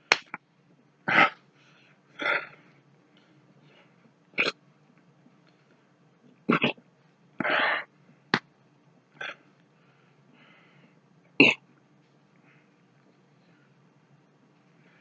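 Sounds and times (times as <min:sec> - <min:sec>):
man hiccuping and coughing: 0:06.5 - 0:06.8, 0:11.4 - 0:11.6.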